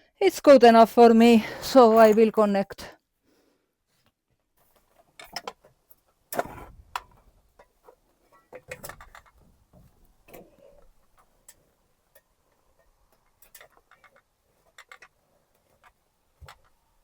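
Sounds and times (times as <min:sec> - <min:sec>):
small taps and rattles: 0:06.9 - 0:10.5, 0:11.2 - 0:16.8.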